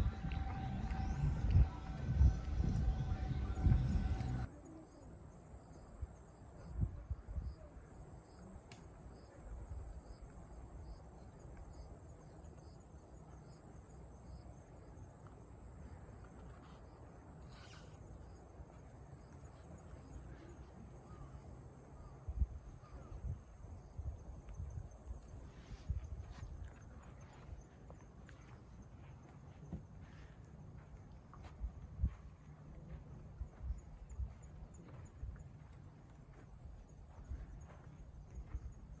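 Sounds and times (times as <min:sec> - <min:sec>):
low rumble: 0:00.0 - 0:04.5
soft insect chirp: 0:04.4 - 0:39.0.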